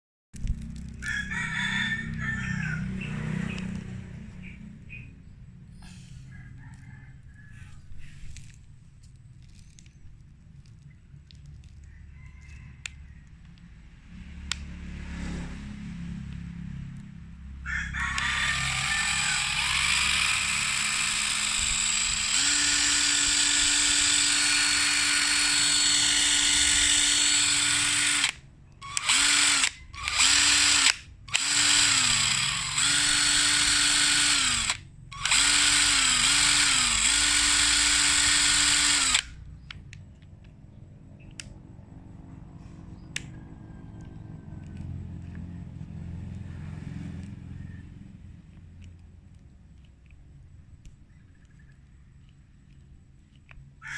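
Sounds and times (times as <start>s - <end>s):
impact wrench motor spinning: 18.1s - 39.9s.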